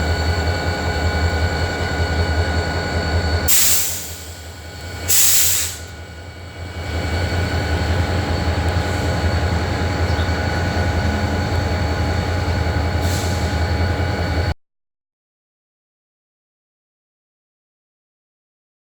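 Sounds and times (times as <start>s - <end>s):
diesel locomotive engine droning: 0.0s - 14.6s
air hiss: 3.5s - 5.9s, 13.0s - 13.6s.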